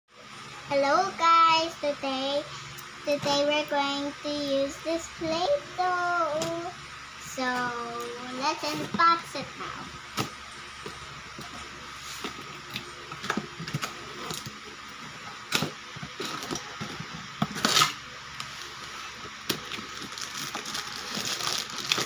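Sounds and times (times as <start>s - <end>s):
packaging crinkling: 19.5s - 22.0s
toy packaging clicks and crackles: 19.5s - 22.0s.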